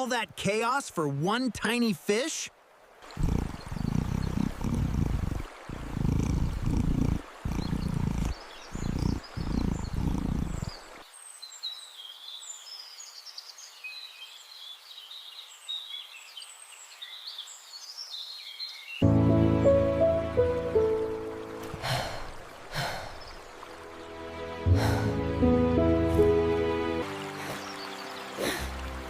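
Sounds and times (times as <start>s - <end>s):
animal rumbling: 3.0s - 11.0s
birds chirping: 3.1s - 19.1s, 19.8s - 29.0s
music: 19.0s - 22.0s, 23.7s - 29.0s.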